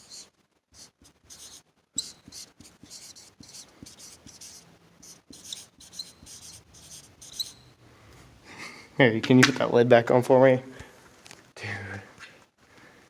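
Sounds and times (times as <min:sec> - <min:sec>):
marker scraping on whiteboard: 0:00.0 - 0:07.8
marker tip squeaks: 0:00.0 - 0:07.8.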